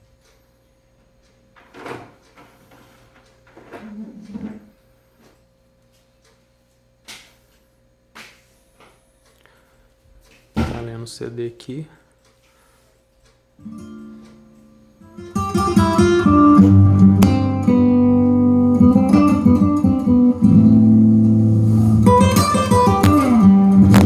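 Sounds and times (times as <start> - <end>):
guitar music through speakers: 13.6 - 24.0.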